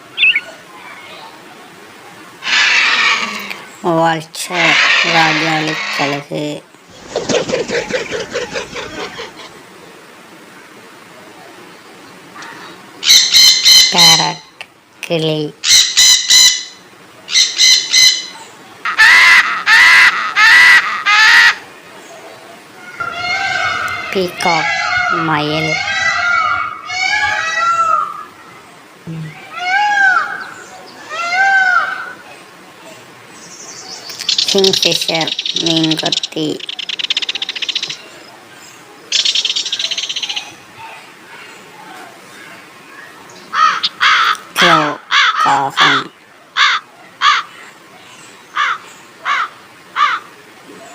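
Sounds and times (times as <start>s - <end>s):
parrot calling: 0.0s - 1.0s, 2.4s - 3.8s, 4.5s - 6.3s, 7.7s - 9.6s, 12.4s - 14.5s, 15.6s - 21.6s, 22.8s - 28.4s, 43.5s - 47.5s
crow cawing: 2.4s - 3.6s, 4.6s - 6.2s, 18.9s - 21.6s, 23.0s - 28.3s, 43.5s - 47.5s, 48.6s - 50.3s.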